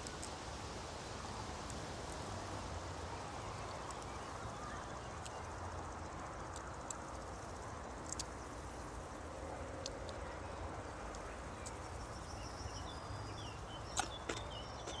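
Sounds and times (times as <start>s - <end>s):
outdoor background hiss: 0.0s - 15.0s
bird chirps: 11.2s - 15.0s.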